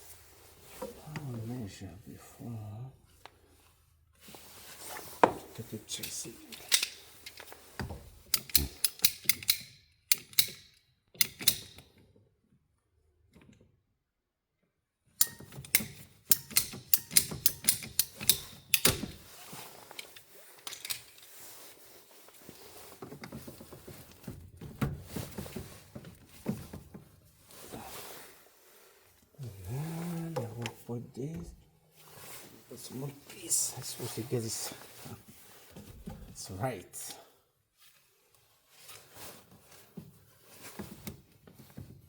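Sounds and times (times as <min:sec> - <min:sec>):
handling and scraping: 0:00.0 - 0:01.8, 0:03.1 - 0:08.9, 0:15.4 - 0:36.6, 0:37.8 - 0:42.0
hand snips clicking: 0:08.3 - 0:11.8, 0:15.2 - 0:19.0.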